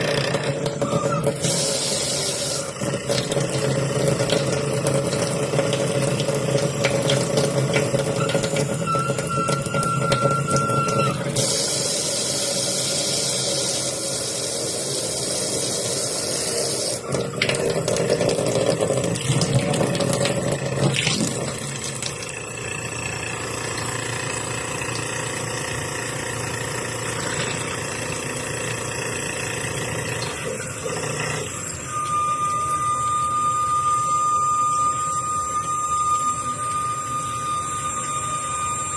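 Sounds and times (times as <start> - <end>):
tap water rushing: 0.0 - 22.6, 24.8 - 28.9
tap vibrating hum and whine: 0.0 - 38.9.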